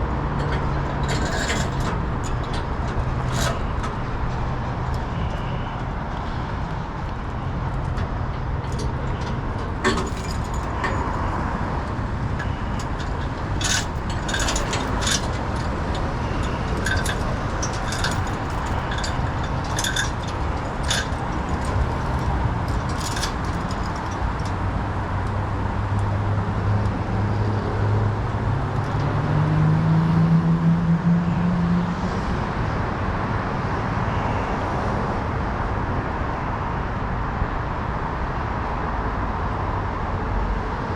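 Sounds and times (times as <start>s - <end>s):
road noise: 0.0s - 40.9s
clinks and rattles: 0.2s - 6.3s, 7.0s - 25.4s.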